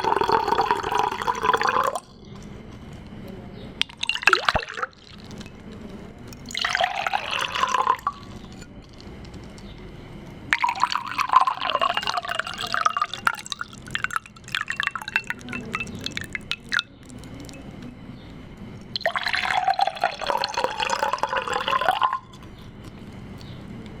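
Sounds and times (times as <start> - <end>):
water pouring and splashing: 3.8 - 5.4, 10.5 - 17.6
water drips ticking: 3.8 - 5.5, 10.5 - 17.9.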